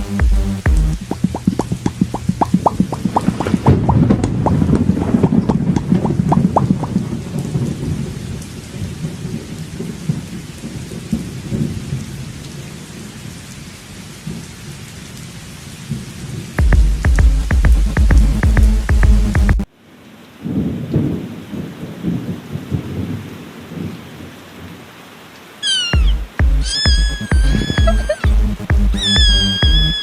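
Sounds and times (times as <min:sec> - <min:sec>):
sharp ticks: 0:00.0 - 0:03.6
thunder rumbling: 0:00.0 - 0:10.2, 0:26.0 - 0:30.0
rain hissing: 0:00.0 - 0:19.5, 0:25.5 - 0:30.0.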